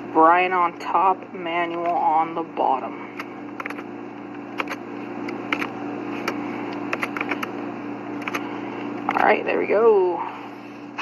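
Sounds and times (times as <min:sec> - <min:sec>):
steady low hum: 0:00.0 - 0:11.0
laptop keyboard typing clicks: 0:03.2 - 0:07.5, 0:08.2 - 0:08.4.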